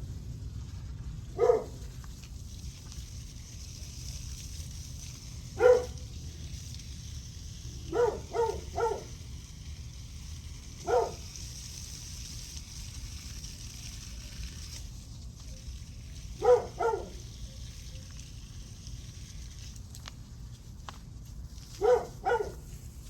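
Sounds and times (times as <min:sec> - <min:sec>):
dog barking: 0:01.4 - 0:01.8, 0:05.6 - 0:06.0, 0:07.9 - 0:09.1, 0:10.8 - 0:11.2, 0:16.4 - 0:17.2, 0:21.8 - 0:22.6.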